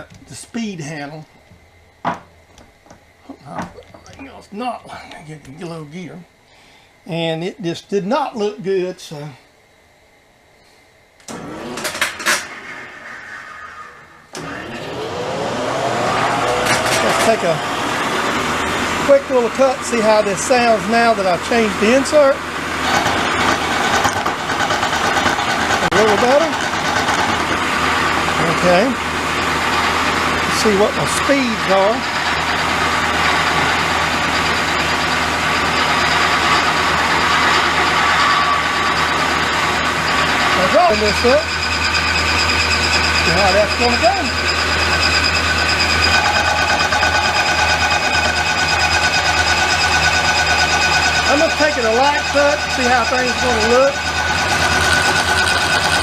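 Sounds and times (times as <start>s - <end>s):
spindle motor spinning up: 11.3s - 56.0s
milling machine running: 14.3s - 56.0s.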